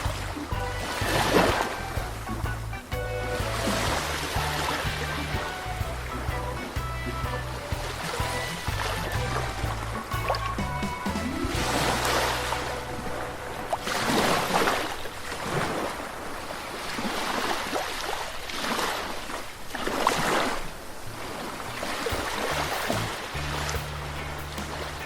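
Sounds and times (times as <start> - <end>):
small waves breaking on shore: 11.6 - 23.4.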